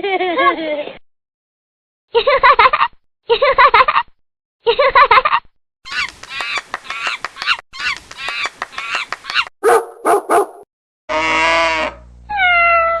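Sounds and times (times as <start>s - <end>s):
bark-like yelps: 9.6s - 10.6s
horn-like honk: 11.1s - 12.1s.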